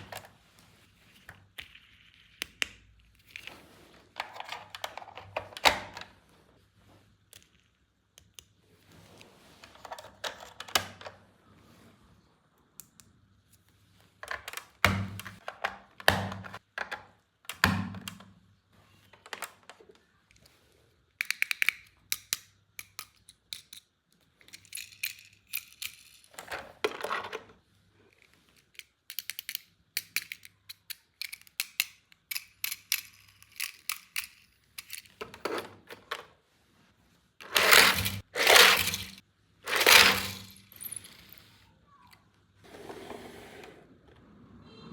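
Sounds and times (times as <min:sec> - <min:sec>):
toys and packaging handled: 0:00.0 - 0:11.9, 0:22.9 - 0:42.8.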